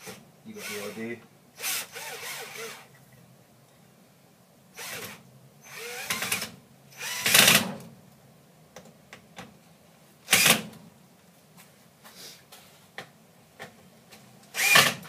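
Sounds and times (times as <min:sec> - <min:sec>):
power drill driving screws: 0:01.6 - 0:02.9, 0:04.8 - 0:07.6, 0:14.5 - 0:15.0.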